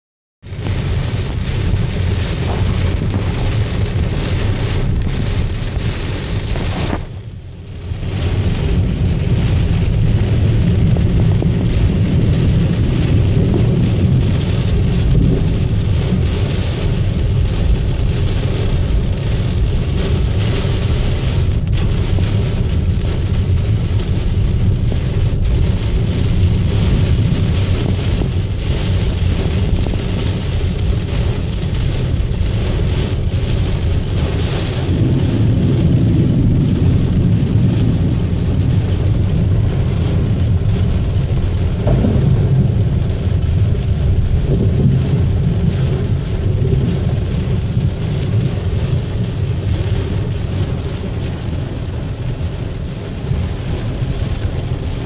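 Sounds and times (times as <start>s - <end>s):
heavy low rumble: 0.4s - 55.0s.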